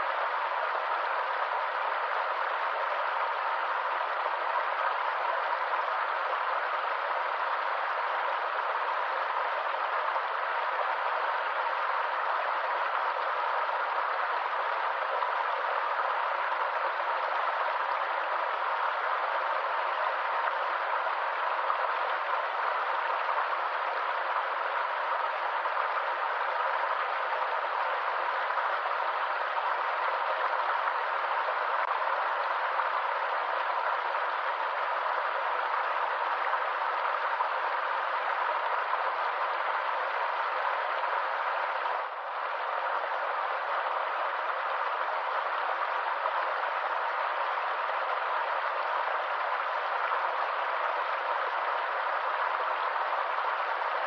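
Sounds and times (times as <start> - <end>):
stream water rushing: 0.0 - 54.0.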